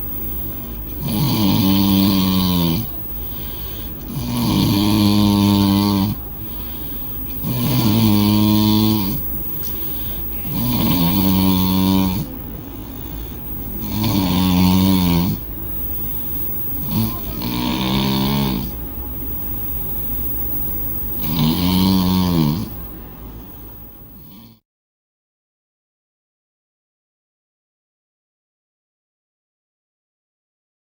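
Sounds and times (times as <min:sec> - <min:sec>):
person snoring loudly: 0:00.5 - 0:18.8, 0:19.4 - 0:22.9, 0:23.5 - 0:24.6.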